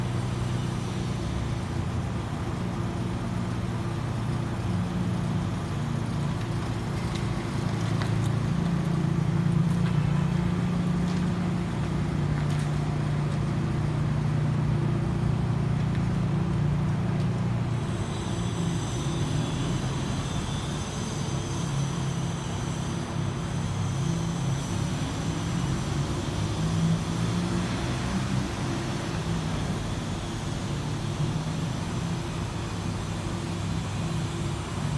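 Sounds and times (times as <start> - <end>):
car engine humming: 0.1 - 18.6.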